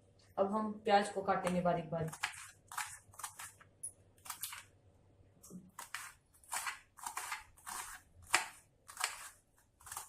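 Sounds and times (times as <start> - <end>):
knife cutting onion on board: 1.4 - 4.6, 5.5 - 10.0.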